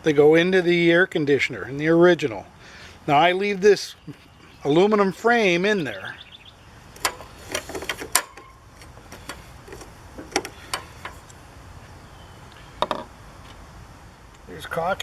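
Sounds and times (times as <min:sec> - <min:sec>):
hand tools clicking on metal: 0:07.0 - 0:11.3.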